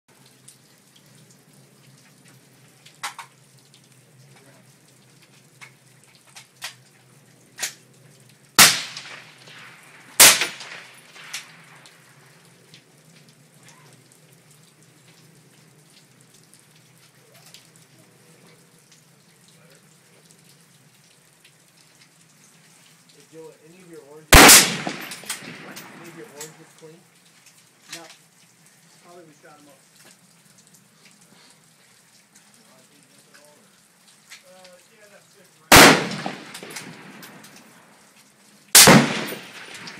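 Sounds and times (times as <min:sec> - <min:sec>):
steady rain: 0:00.1 - 0:39.9
suppressed rifle shots: 0:08.6 - 0:11.5, 0:24.3 - 0:26.2, 0:35.7 - 0:37.4, 0:38.8 - 0:39.9.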